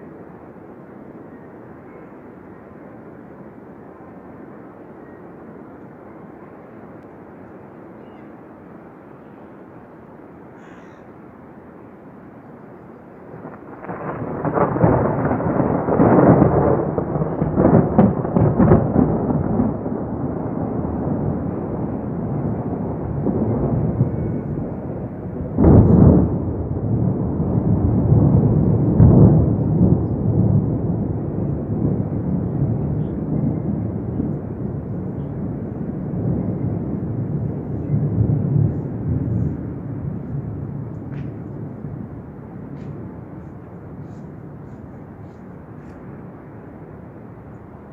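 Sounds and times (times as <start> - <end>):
rolling thunder rumble: 13.2 - 47.9
sharp thunder clap: 13.4 - 45.1.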